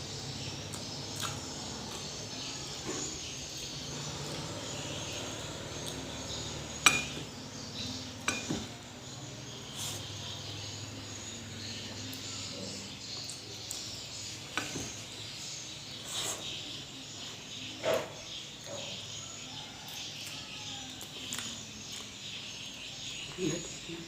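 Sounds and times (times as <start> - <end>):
tableware clinking: 6.8 - 7.2, 8.2 - 8.7.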